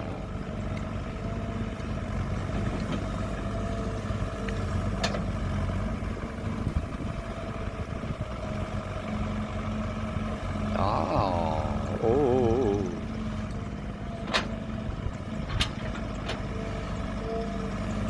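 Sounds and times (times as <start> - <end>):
excavator diesel engine running: 0.0 - 18.0.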